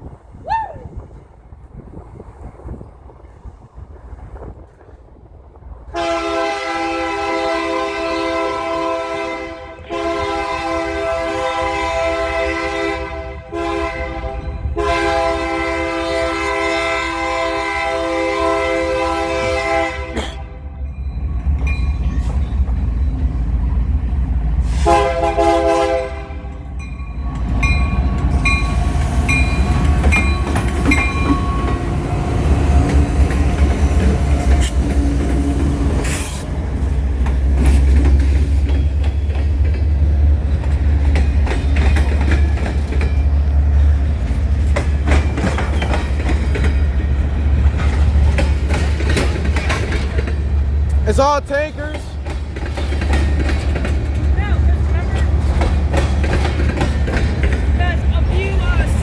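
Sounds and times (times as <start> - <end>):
train rumbling past: 0.0 - 59.0
locomotive air horn blasts: 5.9 - 20.7, 24.7 - 26.8
wheels clattering over rail joints: 26.5 - 59.0.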